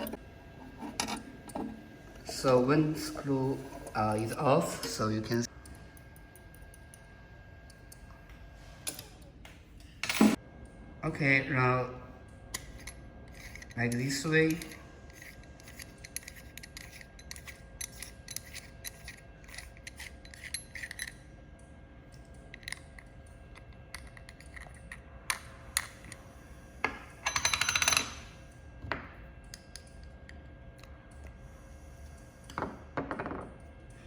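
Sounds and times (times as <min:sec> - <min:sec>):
faint steady hum: 0:00.0 - 0:34.0
small metal parts clicking: 0:12.5 - 0:21.3, 0:22.2 - 0:26.2.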